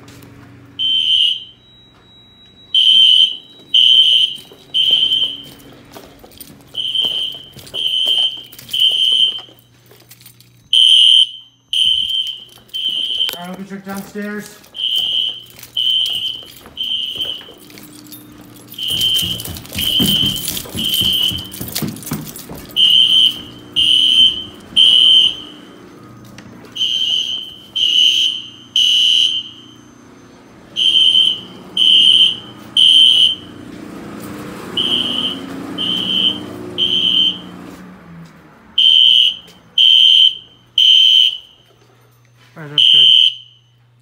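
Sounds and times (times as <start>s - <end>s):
fire alarm horn beeps: 0.7s - 33.7s, 34.6s - 37.7s, 38.8s - 44.0s
thumps: 14.8s - 25.1s.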